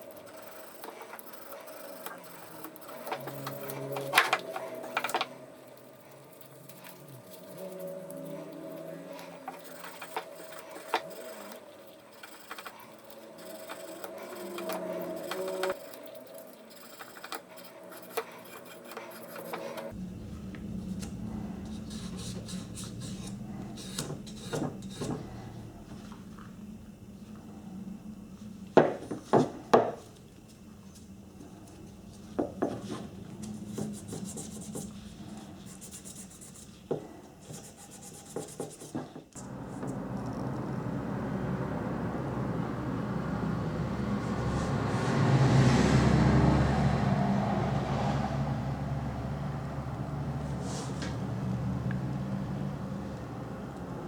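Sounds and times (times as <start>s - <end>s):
filing and rubbing metal: 0.0s - 20.0s, 21.4s - 25.5s, 32.8s - 40.0s
small motor running: 39.4s - 44.9s.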